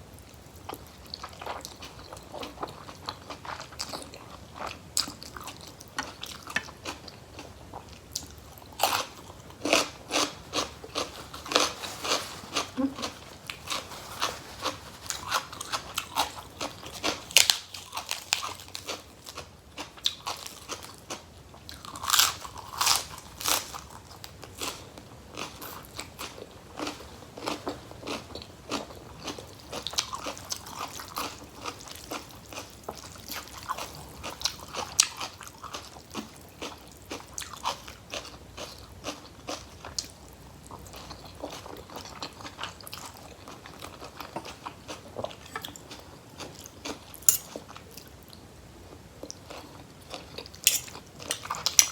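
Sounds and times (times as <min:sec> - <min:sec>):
person chewing crunchy food: 0:00.3 - 0:48.4, 0:49.2 - 0:51.9.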